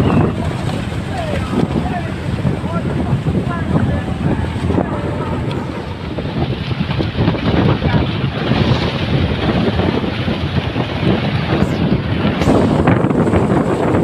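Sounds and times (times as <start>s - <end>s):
boat noise: 0.0s - 14.0s
rushing water: 0.0s - 14.0s
wind buffeting microphone: 0.0s - 14.0s.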